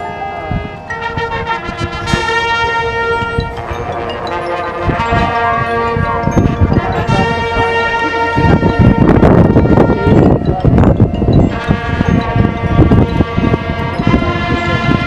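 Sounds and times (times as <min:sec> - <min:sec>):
marching band brass chords: 0:00.0 - 0:10.4, 0:11.5 - 0:15.0.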